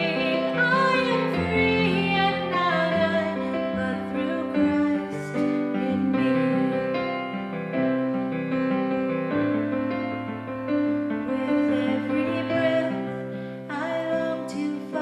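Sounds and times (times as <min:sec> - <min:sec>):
woman singing with vibrato: 0:00.0 - 0:07.2, 0:11.3 - 0:15.0
piano chords: 0:00.0 - 0:15.0.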